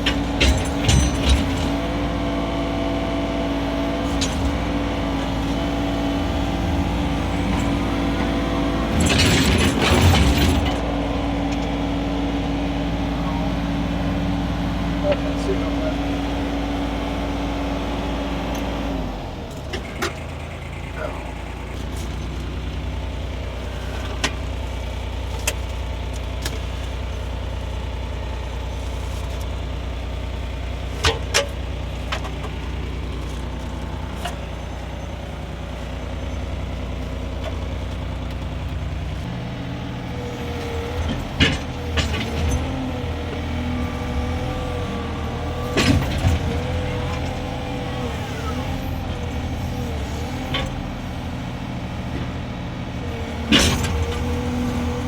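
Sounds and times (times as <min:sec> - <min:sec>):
metal clanks: 0:00.0 - 0:02.2, 0:04.0 - 0:11.7, 0:40.5 - 0:50.9, 0:53.2 - 0:55.0
excavator engine running: 0:00.0 - 0:55.0.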